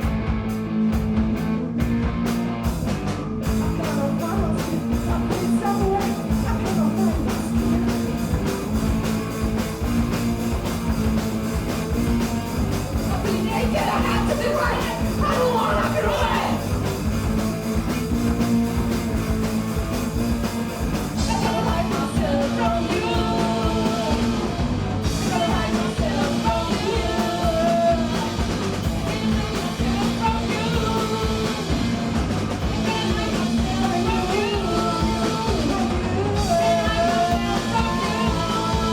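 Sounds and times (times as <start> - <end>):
punk rock band playing: 0.0 - 38.9
person singing: 13.1 - 16.8, 21.2 - 24.4, 25.2 - 31.6, 32.6 - 38.9.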